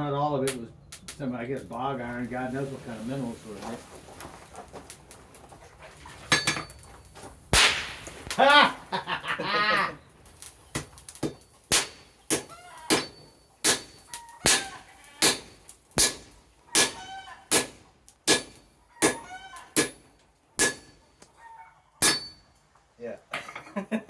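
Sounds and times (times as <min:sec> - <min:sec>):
hammer striking hot iron: 0:06.3 - 0:06.9, 0:10.7 - 0:21.0, 0:22.0 - 0:22.4.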